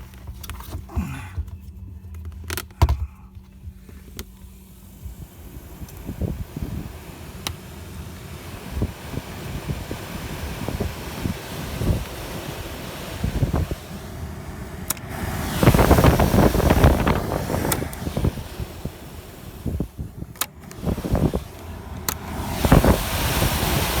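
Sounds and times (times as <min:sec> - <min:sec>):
blower fan rushing air: 0:00.0 - 0:24.0.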